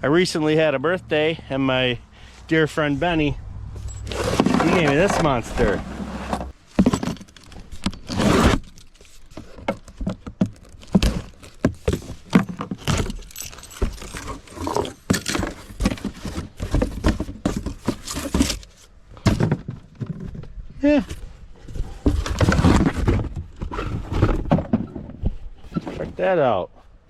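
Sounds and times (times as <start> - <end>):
clicks and clatter of parts: 6.4 - 20.4.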